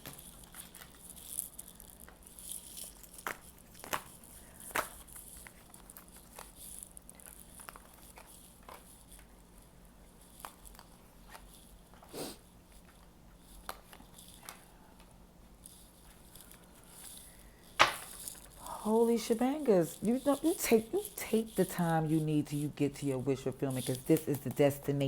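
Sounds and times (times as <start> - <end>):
low steady hum: 0.0 - 25.0
cards clicking and tapping: 17.8 - 18.1.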